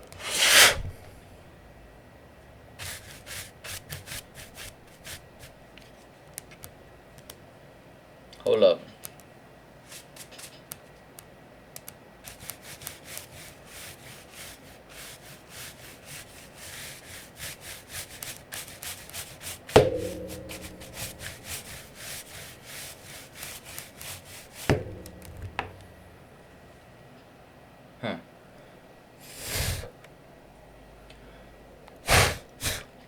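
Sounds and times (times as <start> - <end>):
hollow knock with ringing: 19.7 - 26.6.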